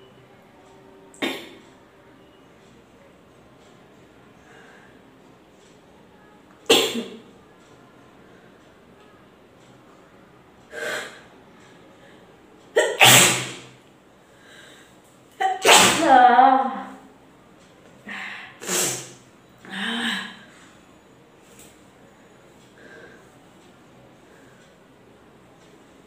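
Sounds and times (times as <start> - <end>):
woman sneezing: 12.8 - 13.7, 15.4 - 16.2.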